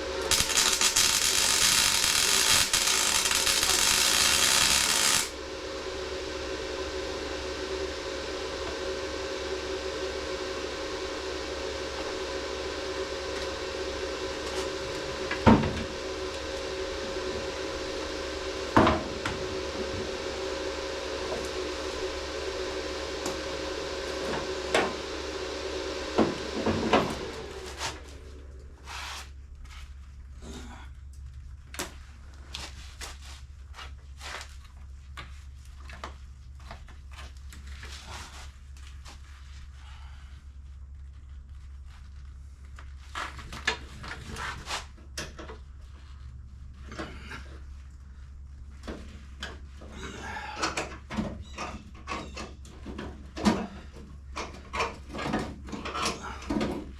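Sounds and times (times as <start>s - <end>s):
welding arc crackling: 0.0s - 5.4s
steady hum: 0.0s - 31.6s.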